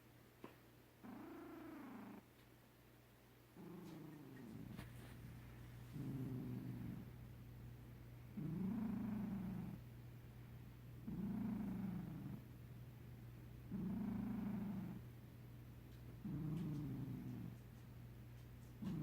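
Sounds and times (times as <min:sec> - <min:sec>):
cat purr-snoring: 0:01.0 - 0:02.2, 0:03.6 - 0:07.2, 0:08.4 - 0:09.8, 0:11.0 - 0:12.5, 0:13.7 - 0:15.1, 0:16.2 - 0:17.7, 0:18.7 - 0:19.0.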